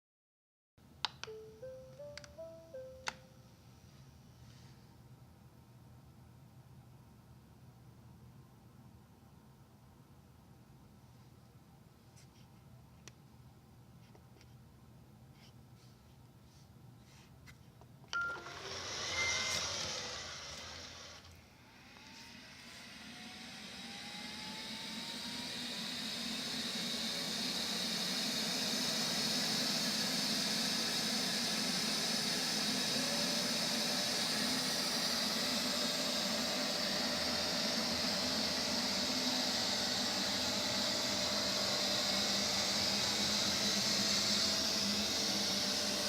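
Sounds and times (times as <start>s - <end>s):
short beep: 18.2s - 18.6s
robot vacuum motor whirring: 18.3s - 46.0s.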